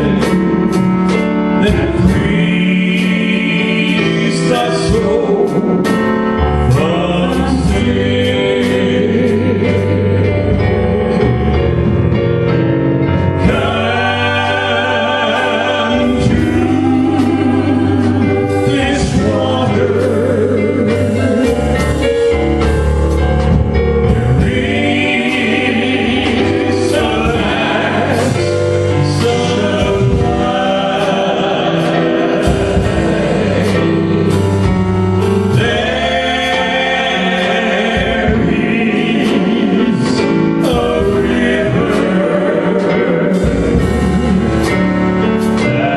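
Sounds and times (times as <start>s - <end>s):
backing band with steady beat: 0.0s - 45.9s
gospel singing: 0.0s - 45.9s.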